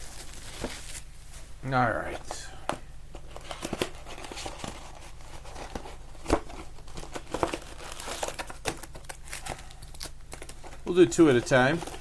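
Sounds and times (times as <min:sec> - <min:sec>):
plastic wrapping crinkling and tearing: 0:00.0 - 0:01.1, 0:05.4 - 0:12.0.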